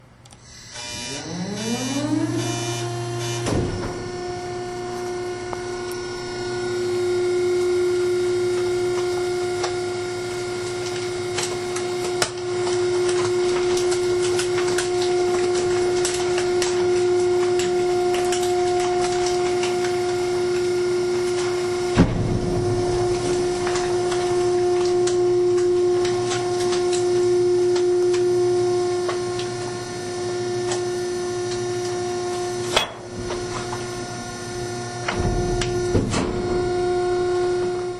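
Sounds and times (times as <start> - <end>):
trash compactor motor hum: 0.2 - 37.9
crackles and clicks of compressed load: 6.8 - 29.8, 30.5 - 33.9, 35.0 - 37.9.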